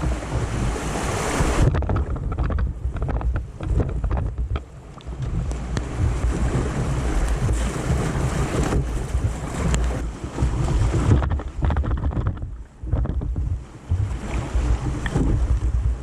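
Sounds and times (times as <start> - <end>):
whitewater rapids rushing: 0.0 - 1.7
wind buffeting microphone: 0.0 - 16.0.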